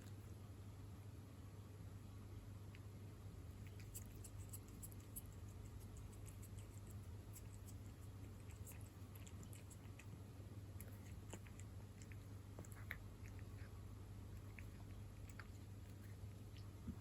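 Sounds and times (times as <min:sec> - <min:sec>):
steady low hum: 0:00.0 - 0:17.0
cat chewing wet food: 0:03.5 - 0:17.0.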